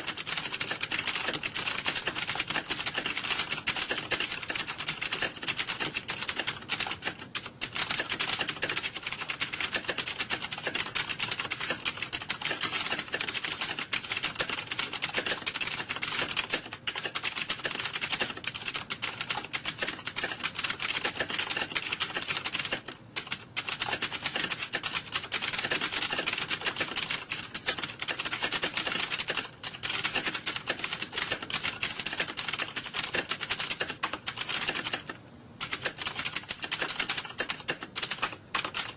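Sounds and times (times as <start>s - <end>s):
fast keyboard typing: 0.0s - 38.9s.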